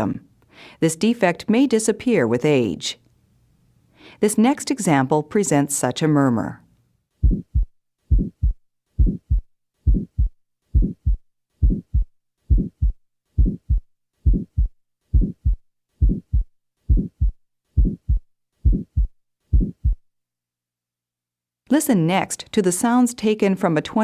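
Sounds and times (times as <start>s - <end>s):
heart murmur: 7.2s - 20.0s
heartbeat low thuds: 7.2s - 20.0s.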